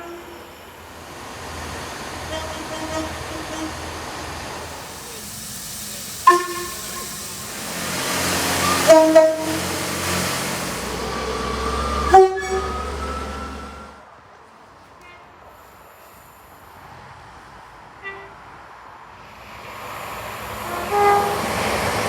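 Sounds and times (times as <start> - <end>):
train horn blasts: 0.0 - 0.7, 2.2 - 4.2, 6.2 - 10.7, 11.8 - 13.9, 18.0 - 18.4, 20.6 - 21.8
train rumbling past: 0.0 - 22.0.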